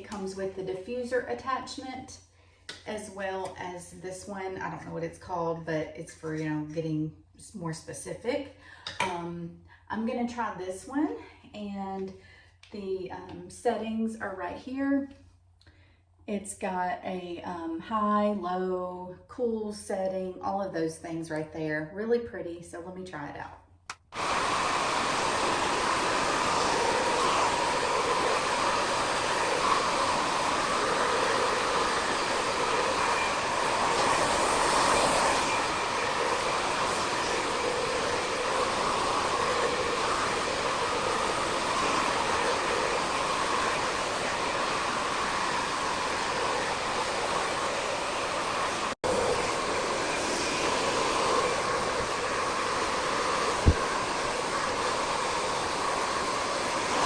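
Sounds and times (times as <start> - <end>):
blow dryer running: 24.1 - 57.0.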